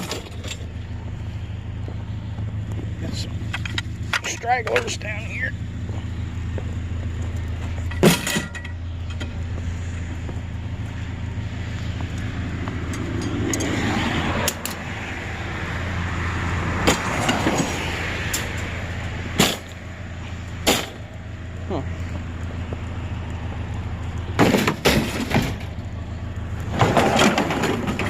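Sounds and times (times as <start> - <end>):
truck engine hum: 0.0 - 28.0
tyre and road noise: 0.0 - 28.0.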